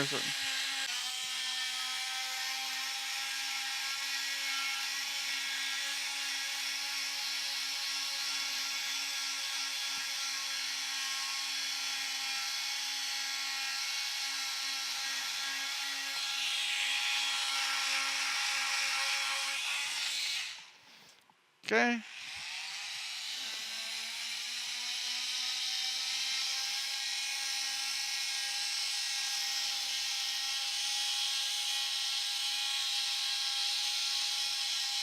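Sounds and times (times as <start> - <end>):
oscillating tool sanding wood: 0.0 - 20.6.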